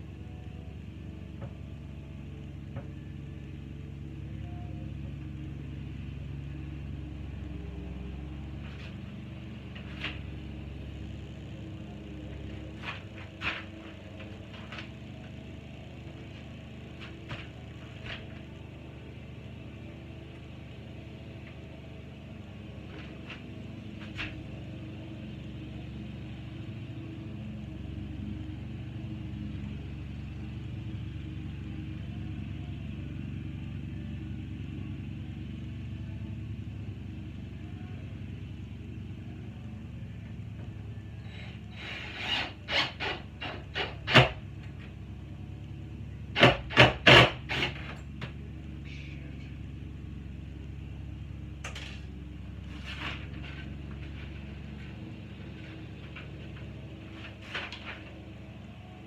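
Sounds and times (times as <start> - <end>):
engine rumbling: 0.0 - 59.0
sharp clicks and knocks: 46.4 - 48.4.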